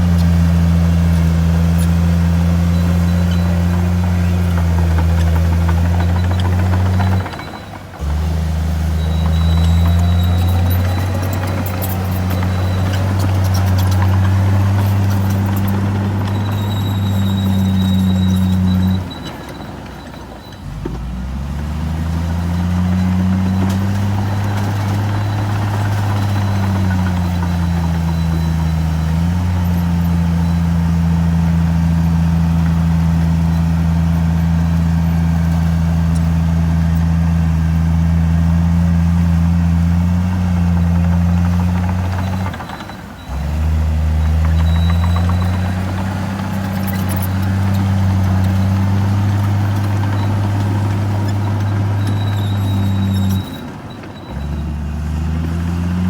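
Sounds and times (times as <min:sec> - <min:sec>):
heavy diesel engine revving: 0:00.0 - 0:56.0.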